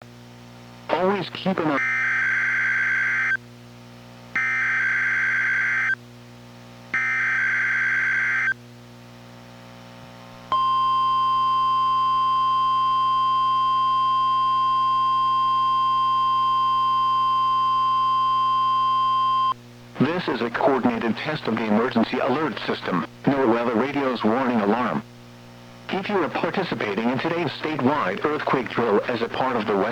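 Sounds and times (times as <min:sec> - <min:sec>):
steady warning alarm tone: 0:01.8 - 0:03.4, 0:04.4 - 0:06.0, 0:07.0 - 0:08.6, 0:10.5 - 0:19.6.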